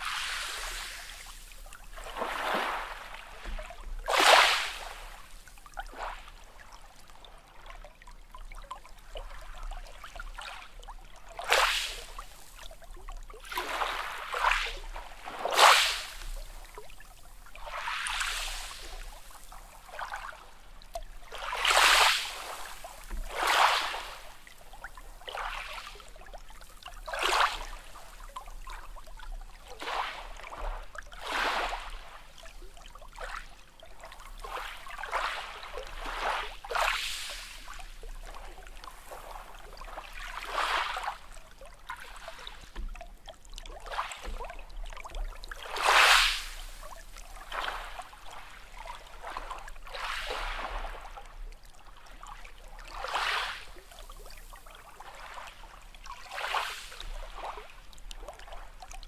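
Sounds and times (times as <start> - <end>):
small waves lapping: 0.0 - 59.0
water trickling: 4.8 - 14.2, 24.2 - 31.2, 37.6 - 45.8, 53.7 - 59.0.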